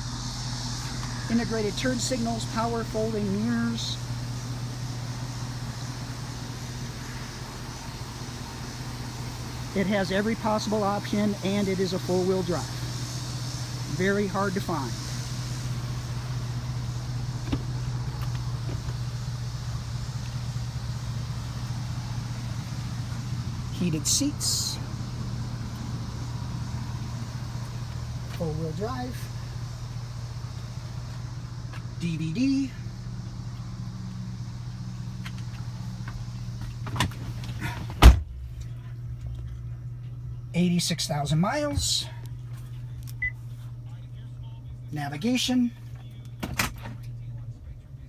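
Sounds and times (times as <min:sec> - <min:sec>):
car engine idling: 0:00.0 - 0:48.0
car door shutting: 0:15.2 - 0:23.7, 0:35.2 - 0:38.8, 0:46.2 - 0:47.0.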